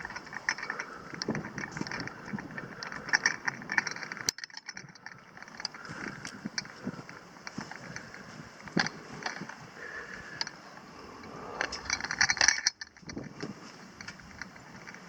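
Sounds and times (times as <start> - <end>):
gear clicking and clinking: 0.0 - 15.0
rustling of gear: 0.0 - 15.0.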